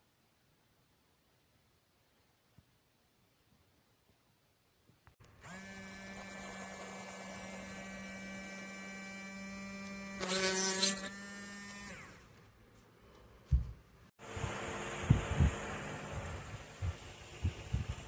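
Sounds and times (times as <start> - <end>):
rotary tool motor humming: 5.4 - 12.3.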